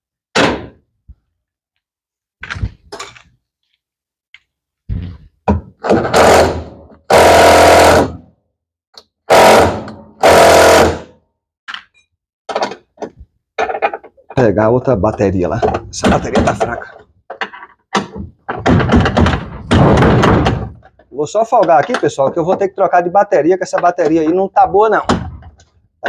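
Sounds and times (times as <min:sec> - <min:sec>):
tools knocking: 0:20.7 - 0:22.7.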